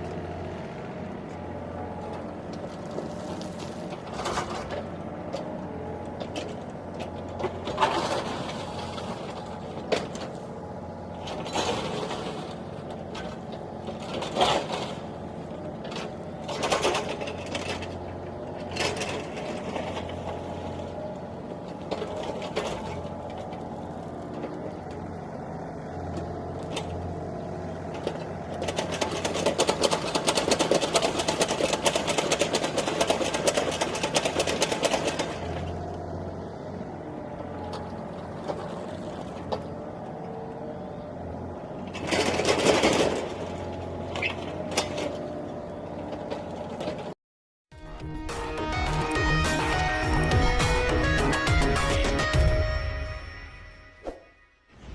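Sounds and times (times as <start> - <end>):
excavator diesel engine running: 0.0 - 47.2, 47.8 - 54.2
dense mechanical clatter: 27.9 - 35.8.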